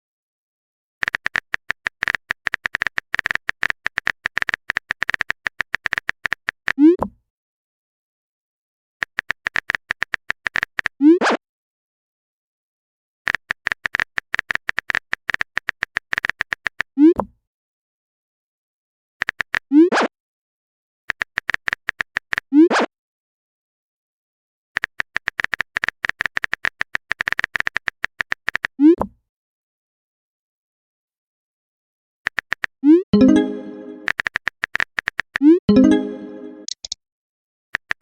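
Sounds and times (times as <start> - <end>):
rapid typing clicks: 1.0 - 6.8, 9.0 - 10.9, 13.3 - 16.9, 19.2 - 19.6, 21.1 - 22.4, 24.8 - 28.7, 32.3 - 32.7, 33.9 - 35.4, 36.5 - 37.0.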